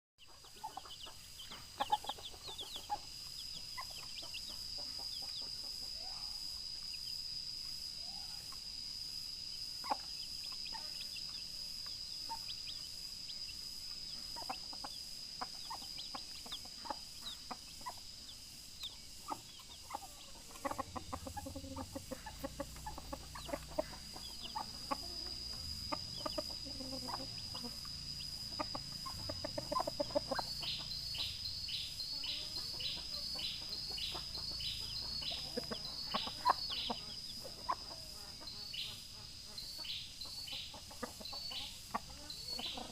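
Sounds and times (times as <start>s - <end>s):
chickens: 0.2s - 42.9s
rooster clucking: 19.2s - 31.6s, 32.2s - 38.5s, 40.4s - 42.9s.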